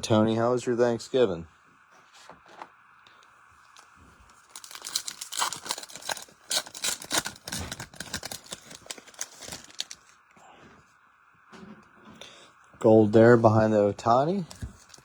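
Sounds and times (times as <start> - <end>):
foil wrapper tearing and crinkling: 4.3 - 10.2, 14.5 - 15.0.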